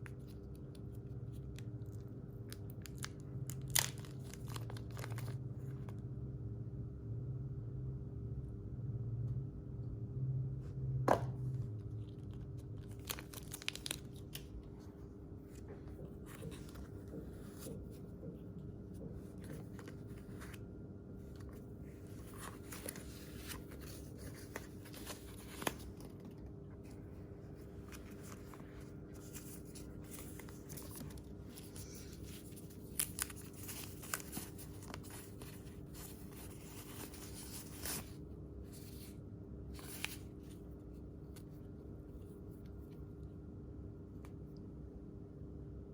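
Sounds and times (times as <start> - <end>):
steady low hum: 0.0 - 45.9
paper or plastic crinkling: 2.6 - 5.4, 12.2 - 14.6, 22.0 - 26.4, 27.5 - 38.2.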